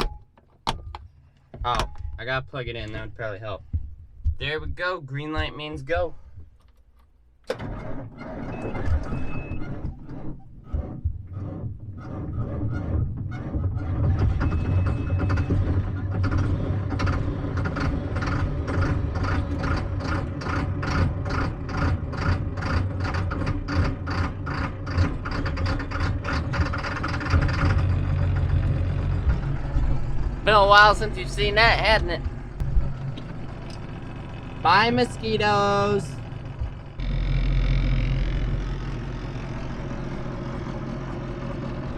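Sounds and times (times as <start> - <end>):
tractor diesel engine starting: 7.4 - 41.9.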